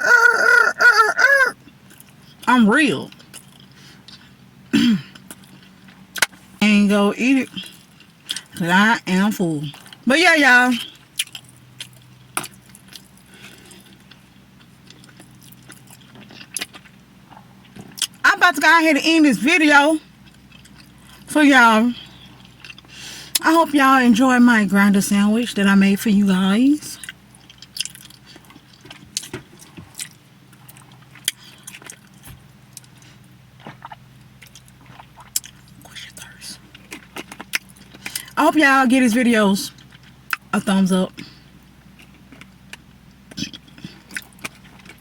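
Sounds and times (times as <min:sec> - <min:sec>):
person chewing food: 0:00.0 - 0:02.5, 0:11.0 - 0:18.2, 0:20.1 - 0:21.3, 0:22.0 - 0:23.4, 0:27.0 - 0:38.4, 0:41.2 - 0:45.0
faint low hum: 0:00.0 - 0:45.0.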